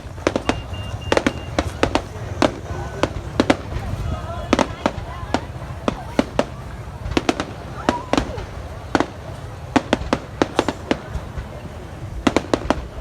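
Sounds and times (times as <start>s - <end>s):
fireworks bangs and cracks: 0.0s - 13.0s
low rumble: 0.0s - 13.0s.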